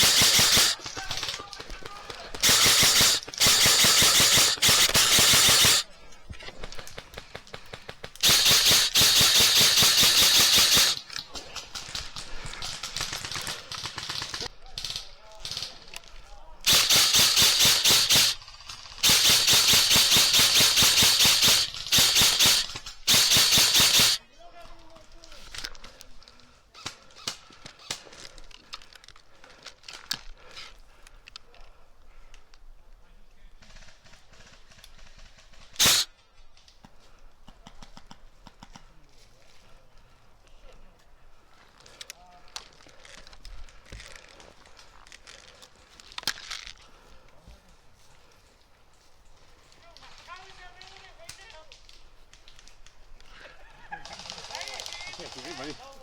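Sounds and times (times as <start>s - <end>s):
airsoft gun full-auto bursts: 0.0s - 5.9s, 6.6s - 15.6s, 16.6s - 24.2s, 33.6s - 36.1s, 54.0s - 56.0s.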